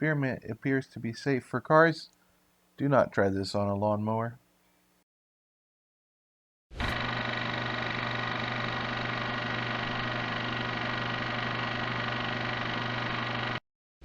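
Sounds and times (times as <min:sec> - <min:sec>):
lawnmower engine running: 0:06.9 - 0:13.6.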